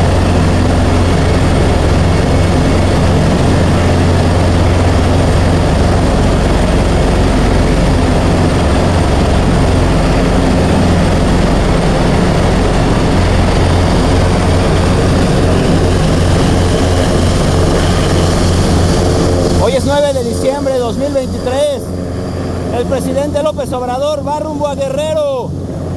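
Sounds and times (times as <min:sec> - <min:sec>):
helicopter engine and rotor: 0:00.0 - 0:25.9.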